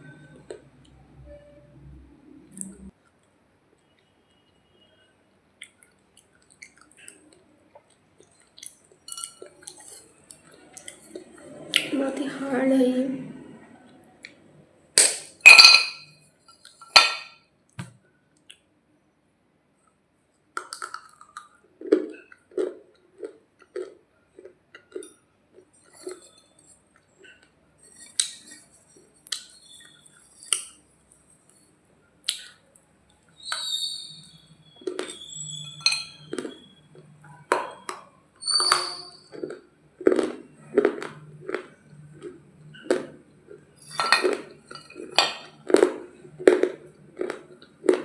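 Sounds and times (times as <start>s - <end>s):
clay being chewed: 34.7s - 48.0s.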